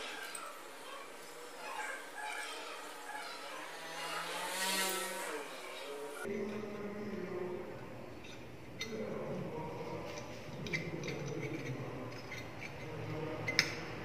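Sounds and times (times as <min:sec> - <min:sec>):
metal clicks of hand tools: 0:13.5 - 0:13.9.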